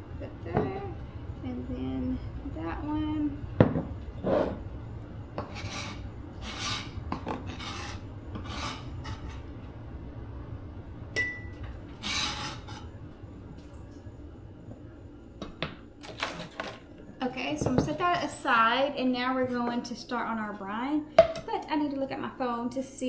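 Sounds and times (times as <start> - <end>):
scraping rubbing strokes: 5.4 - 9.4, 12.0 - 12.8.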